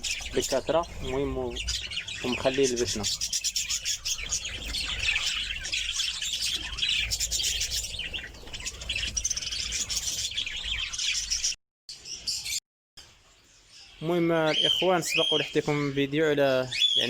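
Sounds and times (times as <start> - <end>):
small parrots chattering: 0.0 - 11.6.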